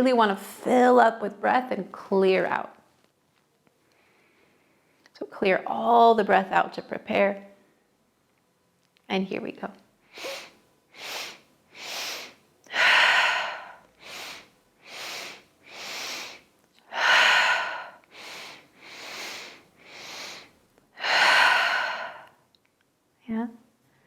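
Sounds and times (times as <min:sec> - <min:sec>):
short nasal inhales: 0:10.1 - 0:22.4
forceful exhale: 0:10.2 - 0:22.4.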